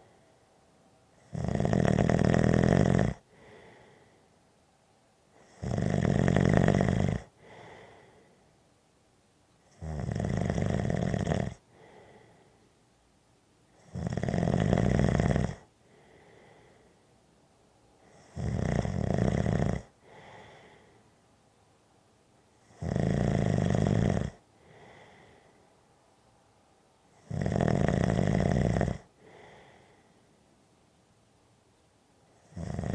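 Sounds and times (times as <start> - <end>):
soft breath: 0.0 - 1.2, 3.2 - 5.6, 7.3 - 8.8, 11.6 - 13.0, 15.6 - 18.4, 19.8 - 21.8, 24.3 - 27.3, 29.0 - 30.8
person snoring: 1.2 - 4.0, 5.4 - 8.2, 9.7 - 12.4, 13.8 - 16.8, 18.1 - 20.8, 22.6 - 25.4, 27.2 - 30.0, 32.4 - 32.9.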